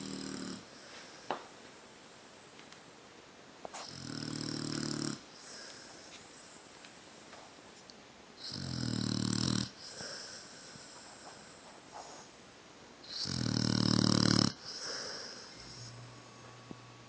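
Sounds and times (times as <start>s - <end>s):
dog snoring loudly: 0.0s - 0.8s, 3.8s - 5.7s, 8.4s - 11.0s, 13.0s - 16.1s
soft breath: 0.7s - 1.5s, 5.3s - 6.9s, 9.8s - 12.4s, 14.6s - 16.9s.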